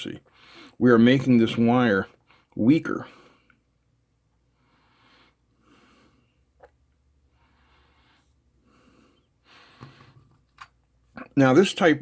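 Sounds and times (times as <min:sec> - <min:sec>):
slow breathing: 0:00.3 - 0:00.8, 0:04.4 - 0:06.6, 0:07.2 - 0:10.4.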